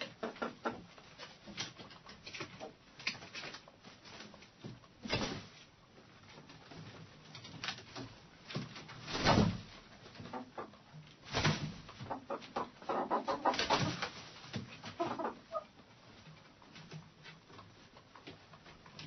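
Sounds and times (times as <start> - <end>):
hens clucking: 0.0 - 1.2, 10.1 - 11.0, 11.9 - 15.8.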